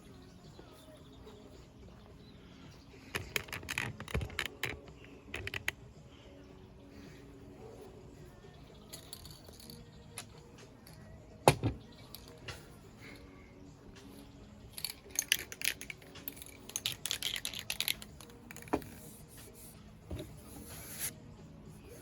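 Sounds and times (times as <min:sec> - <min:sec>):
small objects clicking and clinking: 0:08.8 - 0:11.1, 0:14.1 - 0:19.0.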